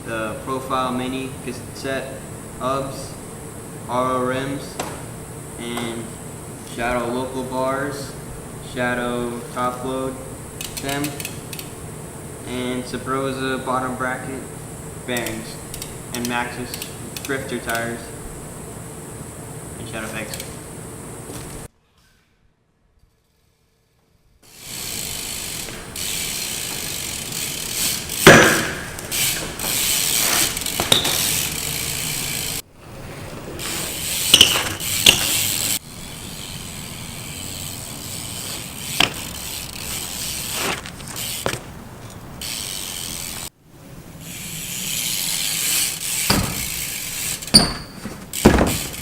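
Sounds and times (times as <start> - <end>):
bike hub ticking rapidly: 10.4 - 12.4, 14.7 - 18.0, 24.4 - 32.6, 33.9 - 41.5, 42.4 - 43.5, 44.2 - 47.6, 48.3 - 49.0
sharp knocks: 28.2 - 29.1, 46.3 - 46.6.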